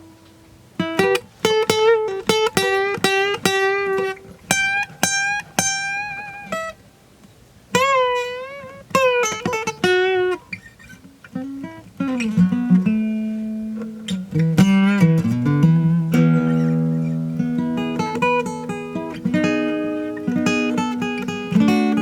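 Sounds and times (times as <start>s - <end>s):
guitar plucked single notes: 11.3s - 22.0s.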